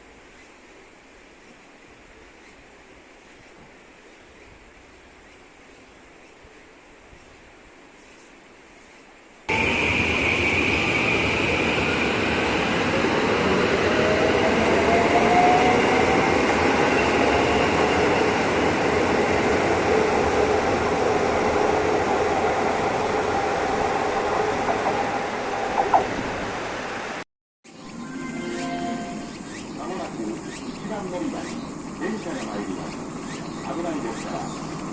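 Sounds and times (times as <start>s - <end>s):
train rumbling on rails: 9.5s - 27.2s, 27.8s - 34.9s
high squeal: 27.7s - 34.9s
rising tone: 27.7s - 34.9s.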